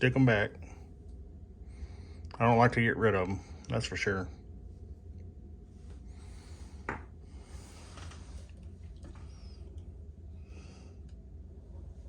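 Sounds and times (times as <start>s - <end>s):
steady low hum: 0.0s - 12.0s
soft rustles: 5.6s - 9.8s.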